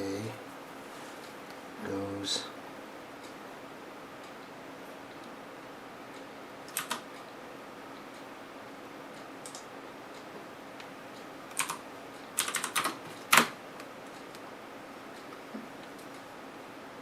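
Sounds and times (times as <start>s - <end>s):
faint steady background hum: 0.0s - 17.0s
computer keystrokes and clicks: 6.7s - 7.1s, 9.4s - 9.7s, 11.5s - 11.8s, 12.4s - 13.6s.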